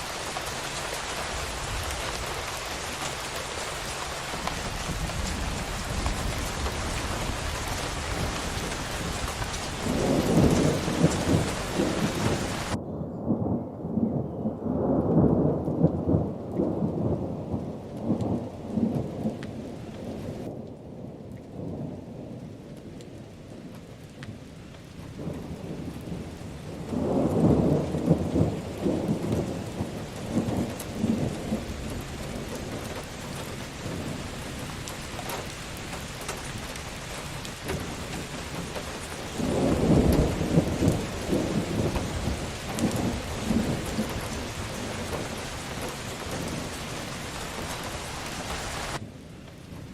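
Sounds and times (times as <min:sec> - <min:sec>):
rain on a roof: 0:00.0 - 0:12.8, 0:14.7 - 0:49.9
rolling thunder: 0:00.0 - 0:49.9.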